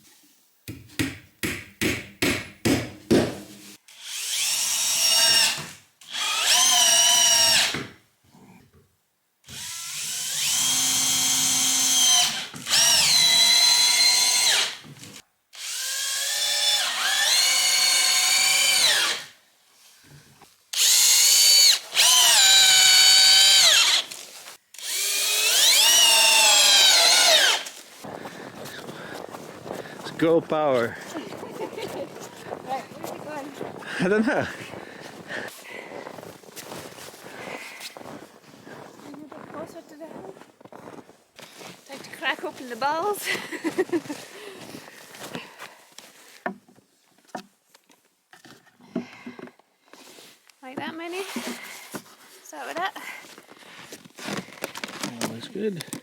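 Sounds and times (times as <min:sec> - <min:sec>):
power drill whining into wood: 0:03.9 - 0:07.9, 0:09.4 - 0:19.4, 0:20.7 - 0:27.8.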